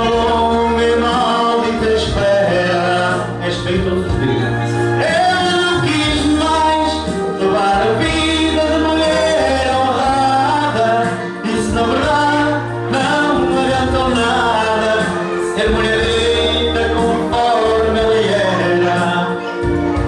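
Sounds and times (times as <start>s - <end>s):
person singing: 0.0s - 20.0s
sustained bass notes: 0.0s - 20.0s.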